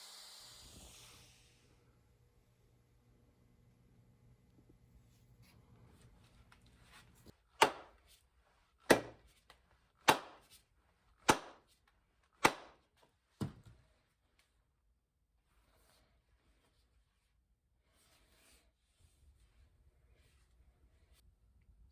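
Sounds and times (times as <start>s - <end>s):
faint low hum: 0.5s - 7.3s.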